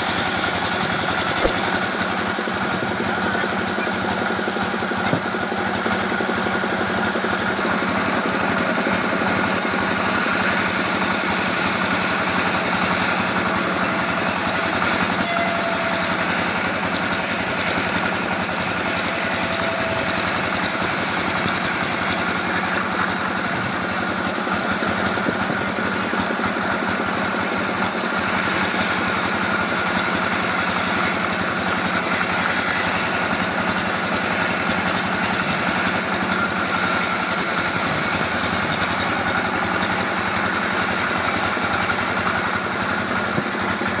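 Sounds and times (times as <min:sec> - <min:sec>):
band sawmill droning: 0:00.0 - 0:44.0.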